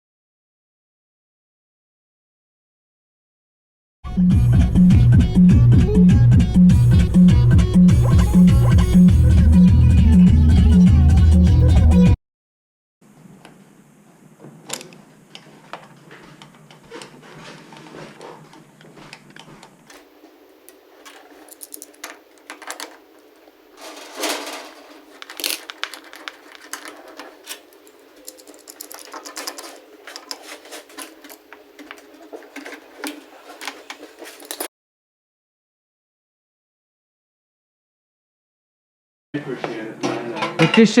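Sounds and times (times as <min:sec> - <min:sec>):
small hard objects clicking: 0:20.7 - 0:34.7.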